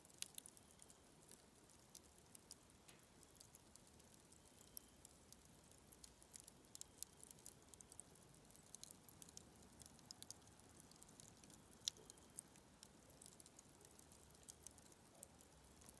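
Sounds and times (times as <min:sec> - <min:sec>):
campfire crackling: 0:00.1 - 0:16.0.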